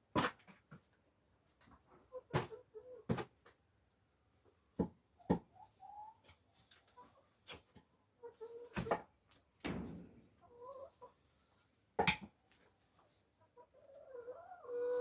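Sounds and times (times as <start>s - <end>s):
hens clucking: 1.5s - 11.2s, 12.1s - 15.0s
sharp knocks: 9.7s - 10.3s.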